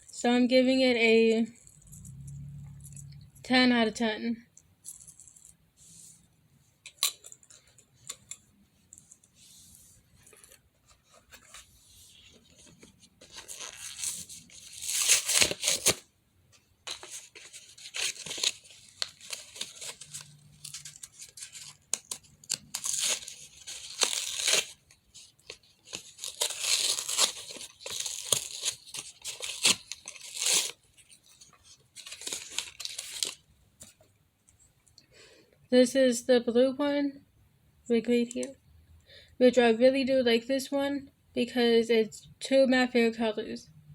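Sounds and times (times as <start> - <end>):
packaging crinkling and tearing: 13.2 - 16.0, 16.9 - 33.4.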